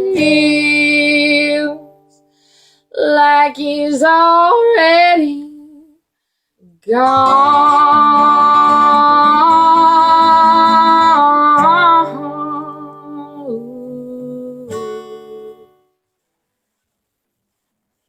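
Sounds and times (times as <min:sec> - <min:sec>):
person singing: 0:00.0 - 0:01.9, 0:06.6 - 0:15.7
acoustic guitar: 0:00.0 - 0:18.0.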